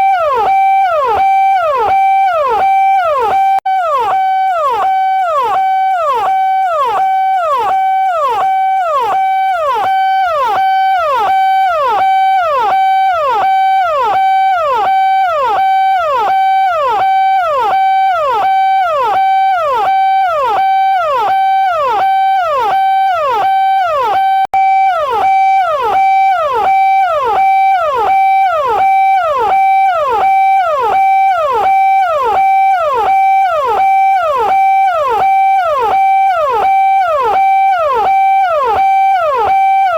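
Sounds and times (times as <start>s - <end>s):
electronic police siren: 0.0s - 39.9s.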